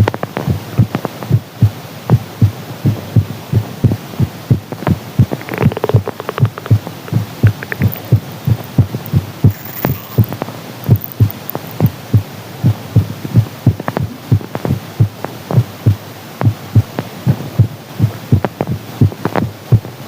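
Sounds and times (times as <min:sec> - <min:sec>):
heartbeat thumps: 0:00.0 - 0:20.0.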